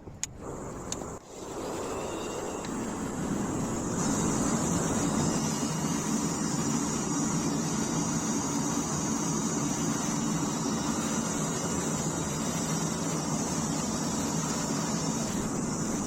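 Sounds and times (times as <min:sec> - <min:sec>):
furnace burner rushing: 0:00.3 - 0:16.0.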